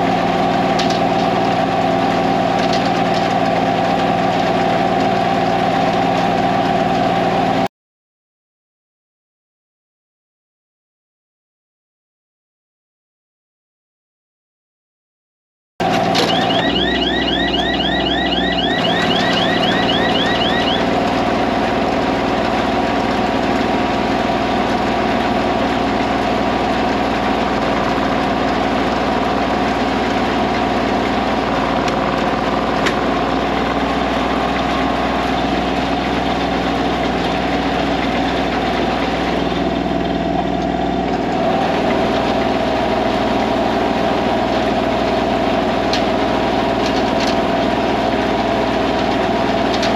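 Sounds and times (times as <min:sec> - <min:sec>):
tractor engine running: 0:00.0 - 0:07.6, 0:15.8 - 0:49.9
high chirps: 0:16.3 - 0:20.9.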